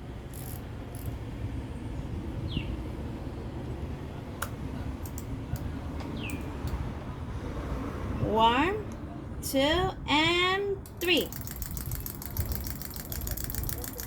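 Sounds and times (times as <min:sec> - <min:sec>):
sharp clicks: 0:10.8 - 0:14.0.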